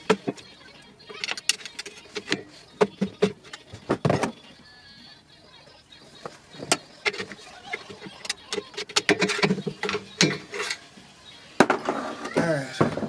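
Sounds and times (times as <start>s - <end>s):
metal tool clicks and clanks: 1.1s - 2.4s, 6.6s - 10.8s
squeaky metal scrape: 6.5s - 10.9s.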